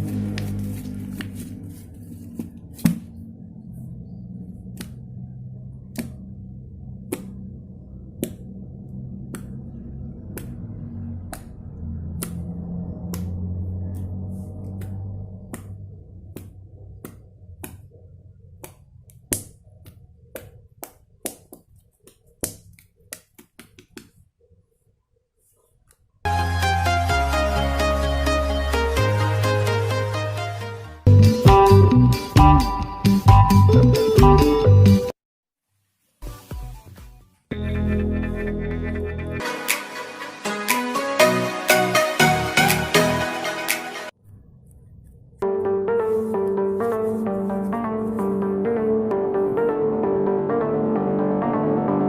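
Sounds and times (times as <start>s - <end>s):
soft background music: 45.4s - 52.0s.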